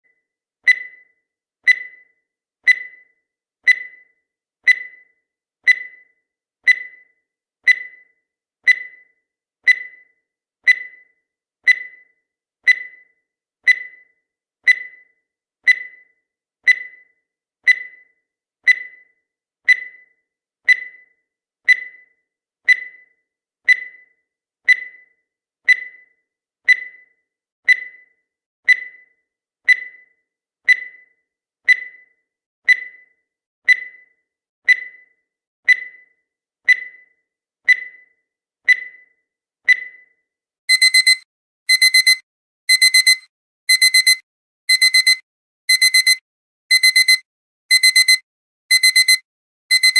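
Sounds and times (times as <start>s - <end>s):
short high-pitched beeps: 40.7s - 49.9s.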